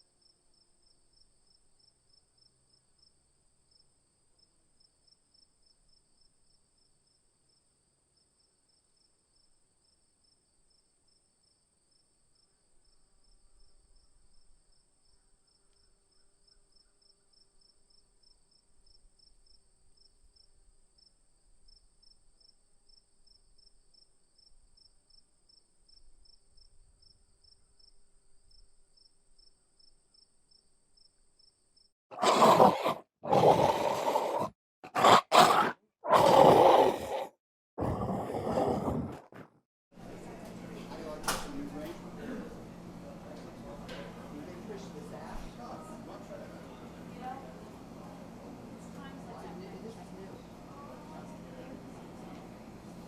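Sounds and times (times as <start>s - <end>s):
crickets chirping: 0.0s - 32.6s.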